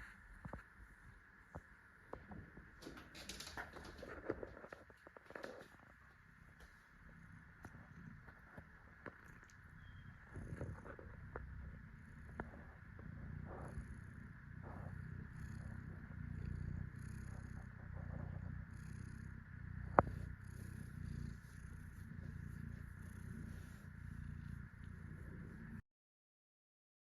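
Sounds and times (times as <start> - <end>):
cat purring: 0.0 - 25.8.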